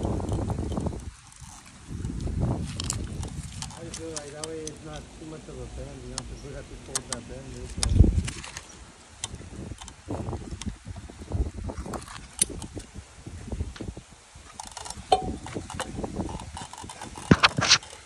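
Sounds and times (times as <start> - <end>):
rigging gear clicking and rattling: 0.0 - 10.9, 11.6 - 12.9, 14.5 - 18.0.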